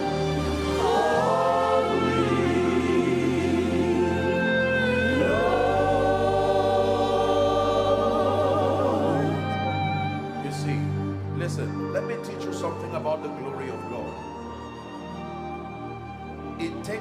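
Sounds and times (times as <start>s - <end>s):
voices singing held notes: 0.0s - 11.0s.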